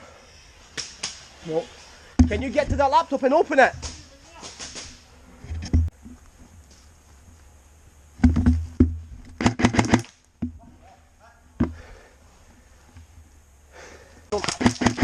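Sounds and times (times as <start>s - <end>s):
airsoft guns firing: 9.4s - 10.1s, 14.3s - 15.0s.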